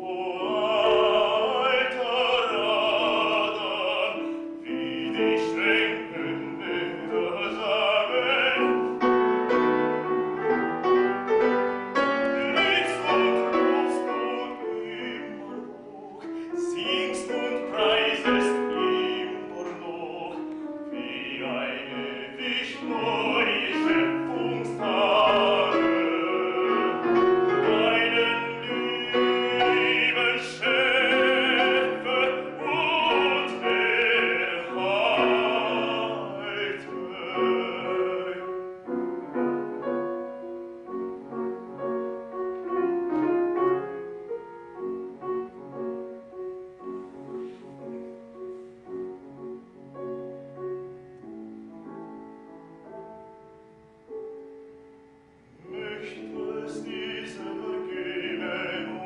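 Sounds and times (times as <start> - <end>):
man singing with vibrato: 0.0 - 10.5, 11.3 - 42.9, 55.6 - 59.0
piano accompaniment: 0.0 - 59.0.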